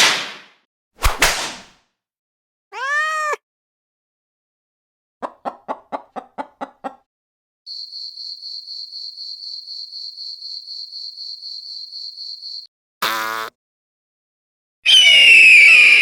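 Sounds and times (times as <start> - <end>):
high-pitched fluttering buzz: 7.7 - 12.7.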